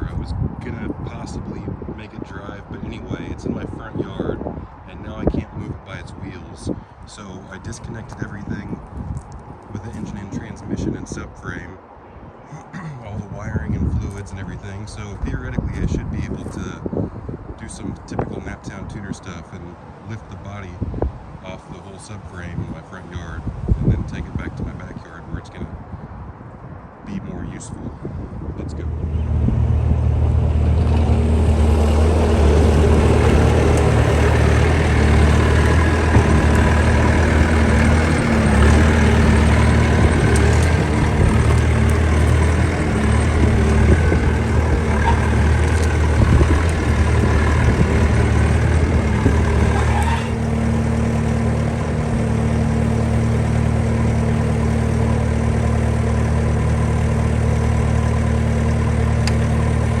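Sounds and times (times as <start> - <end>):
skid steer engine running: 28.8 - 60.0.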